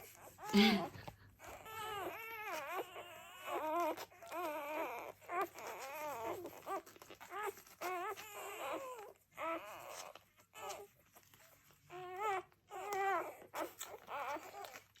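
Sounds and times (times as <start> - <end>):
puppies squealing and whining: 0.0 - 15.0.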